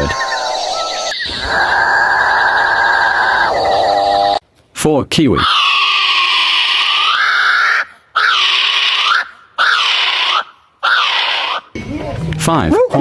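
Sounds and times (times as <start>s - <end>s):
kiwi bird calling: 5.4s - 11.8s.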